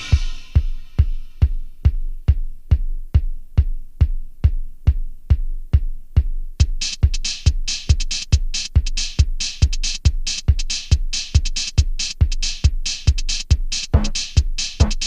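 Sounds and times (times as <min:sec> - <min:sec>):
electronic music: 0:00.0 - 0:01.4, 0:14.0 - 0:15.0
drum machine kick: 0:00.0 - 0:15.0.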